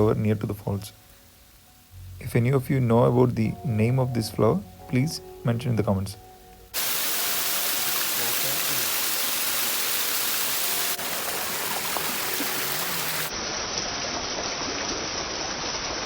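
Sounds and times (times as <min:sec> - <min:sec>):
waterfall rushing: 0:06.8 - 0:14.0.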